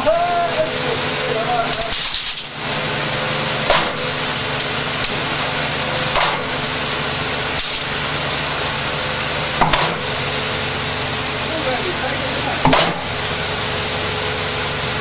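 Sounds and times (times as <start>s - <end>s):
sharp cracks against drum: 3.7s - 4.1s, 6.1s - 6.5s, 9.6s - 10.1s, 12.6s - 13.1s.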